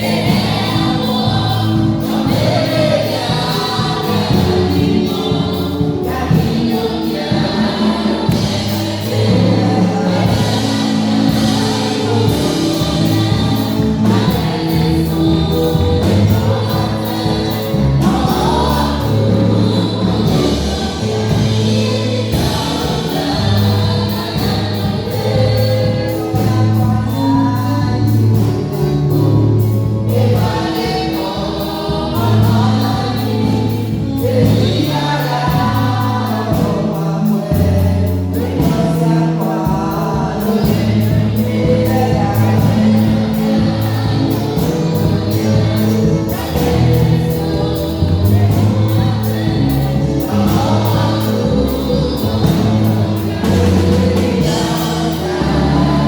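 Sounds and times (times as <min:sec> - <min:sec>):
choir singing gospel: 0:00.0 - 0:56.0
moving bass line: 0:00.0 - 0:56.0.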